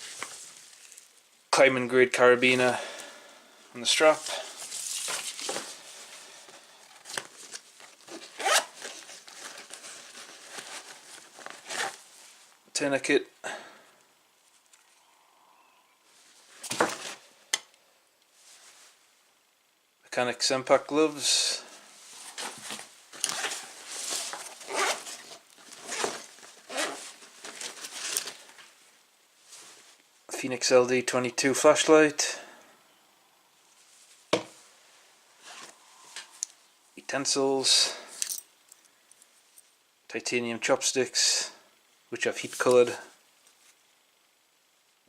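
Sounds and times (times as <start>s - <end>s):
fabric and nylon rustling: 0.0s - 1.3s, 3.9s - 12.6s, 18.3s - 19.1s, 21.6s - 30.2s, 33.7s - 36.7s
short rasp of bag gear: 8.4s - 8.7s, 24.6s - 25.2s.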